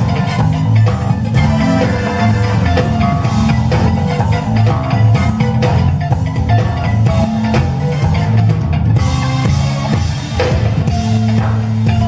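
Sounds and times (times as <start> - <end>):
bass guitar notes: 0.0 - 12.0
funk band playing: 0.0 - 12.0.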